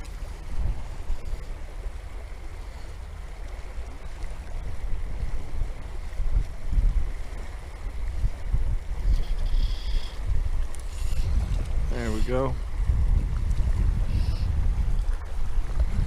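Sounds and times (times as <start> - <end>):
river water rushing: 0.0 - 9.2
wind buffeting microphone: 0.0 - 16.0.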